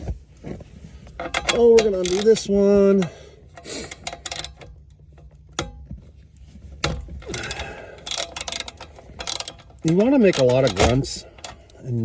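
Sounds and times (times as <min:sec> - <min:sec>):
ratchet wrench clicking: 0:01.2 - 0:02.5, 0:03.9 - 0:04.8, 0:06.9 - 0:11.7.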